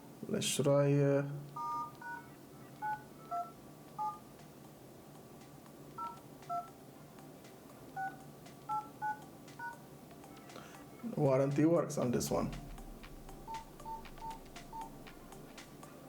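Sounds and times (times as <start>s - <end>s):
phone keypad two-tone beeps: 1.6s - 4.2s, 6.0s - 6.7s, 8.0s - 9.8s, 12.8s - 15.2s.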